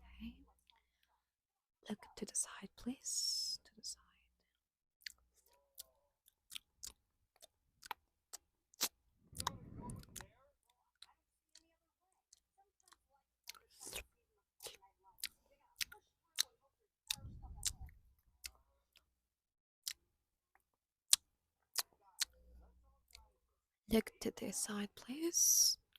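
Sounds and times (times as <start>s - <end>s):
wet mouth clicks and smacks: 6.5s - 10.3s
low rustles: 9.2s - 10.2s.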